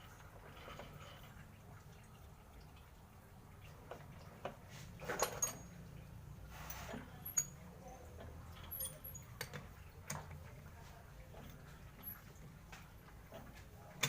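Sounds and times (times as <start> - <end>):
metal tools clinking and pinging: 5.0 - 5.8, 7.2 - 7.6, 8.5 - 9.5.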